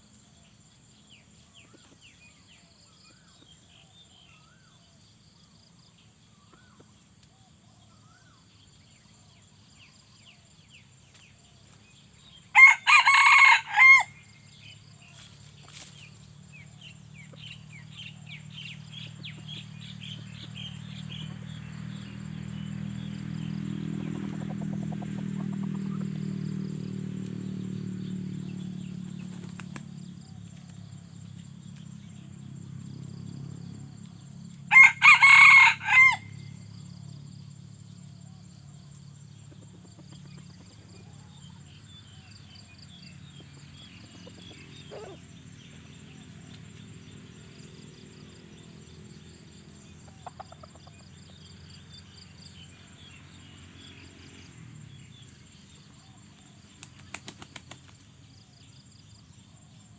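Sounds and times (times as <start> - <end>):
rooster crowing: 12.5 - 14.3, 34.7 - 36.6.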